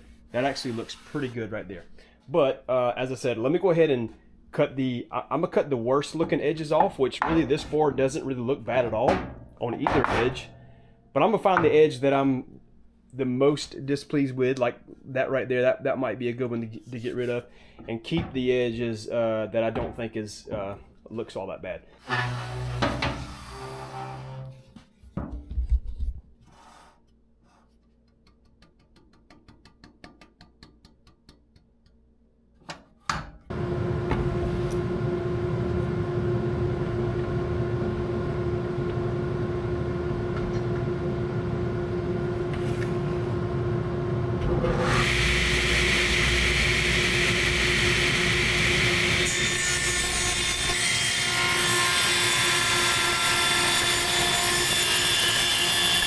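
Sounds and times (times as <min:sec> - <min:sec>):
saw cutting wood: 0:22.0 - 0:24.5, 0:44.5 - 0:56.0
electric saw motor humming: 0:33.5 - 0:49.4, 0:52.1 - 0:56.0.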